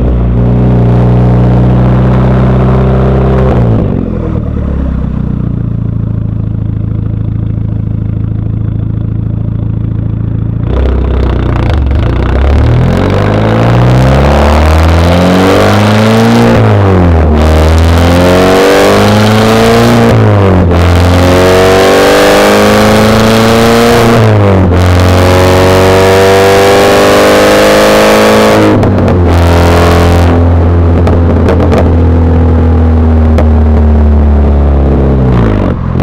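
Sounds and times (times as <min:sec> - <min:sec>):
car engine accelerating: 0:00.0 - 0:36.0.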